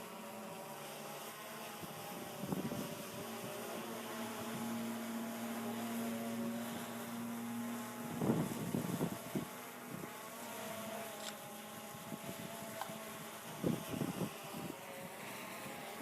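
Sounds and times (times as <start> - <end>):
drone propellers humming: 0.0 - 16.0
wind buffeting microphone: 2.2 - 3.6, 8.0 - 10.1, 11.8 - 16.0.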